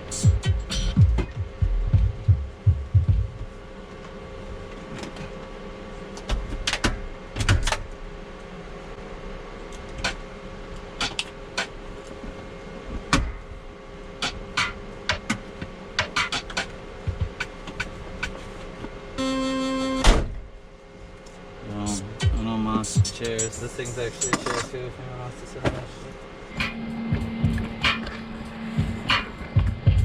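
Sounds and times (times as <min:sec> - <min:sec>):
faint electrical hum: 0:00.0 - 0:30.0
short buzzing beep: 0:19.2 - 0:20.1
thump: 0:20.1 - 0:20.4.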